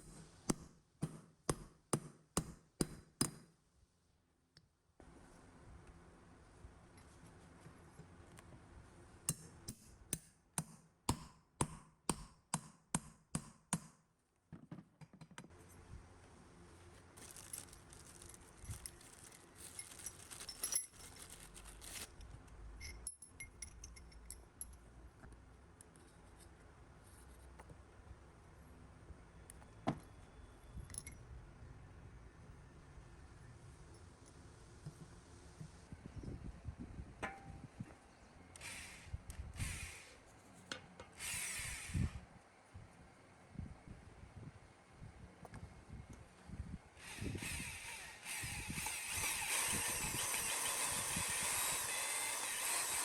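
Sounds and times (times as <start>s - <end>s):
metal pieces clinking and scraping: 17.2s - 22.1s.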